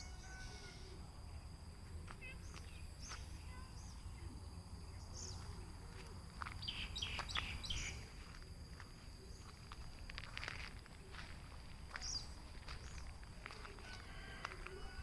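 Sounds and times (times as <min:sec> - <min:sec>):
small birds chirping: 0:02.2 - 0:08.2, 0:11.0 - 0:13.7.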